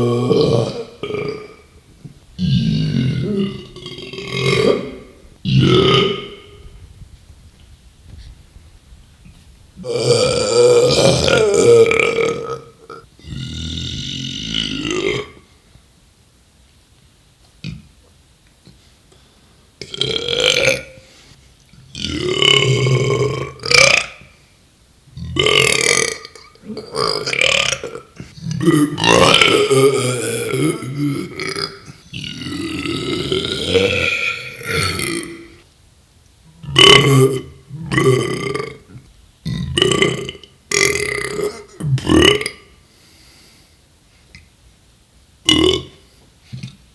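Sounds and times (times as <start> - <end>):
man belching: 0.0 - 1.8, 2.4 - 6.6, 9.8 - 15.4, 19.8 - 21.0, 21.9 - 24.2, 25.2 - 35.6, 36.6 - 42.7, 45.4 - 46.0.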